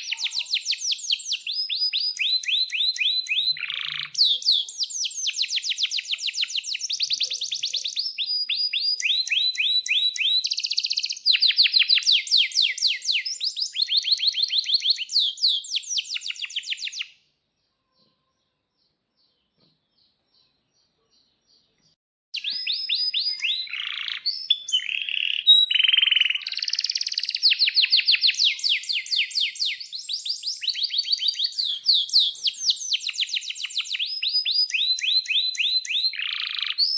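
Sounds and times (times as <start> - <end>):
canary singing trills: 0.0 - 36.9.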